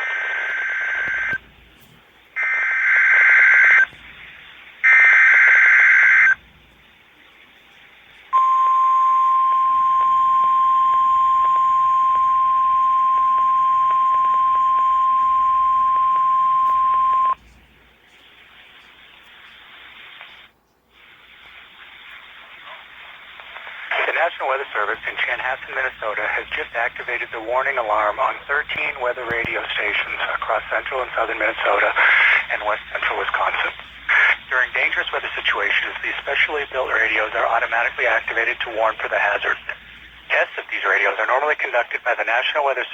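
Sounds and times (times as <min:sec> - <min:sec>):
faint radio hiss: 0:00.0 - 0:42.9
steady warning alarm tone: 0:08.4 - 0:17.4.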